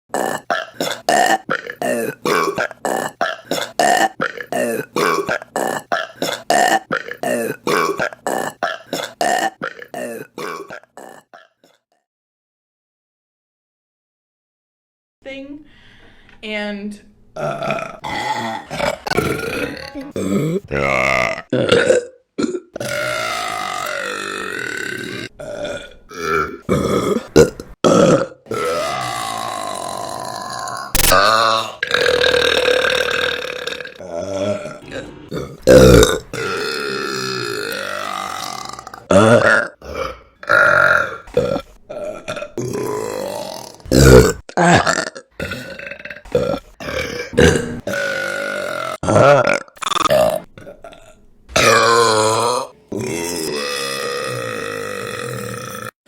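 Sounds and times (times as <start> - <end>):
short burps: 17.4 - 56.0.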